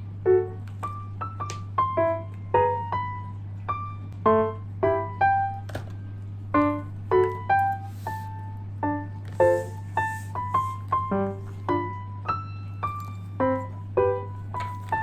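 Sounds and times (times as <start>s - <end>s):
bouncy piano melody: 0.0s - 15.0s
soft shaker hiss: 6.6s - 15.0s.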